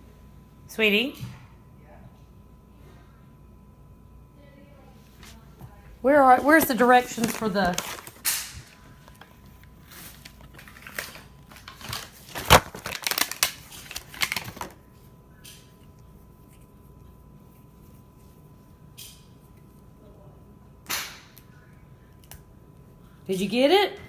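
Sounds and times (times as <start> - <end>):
rustling of handled objects: 5.0 - 14.8.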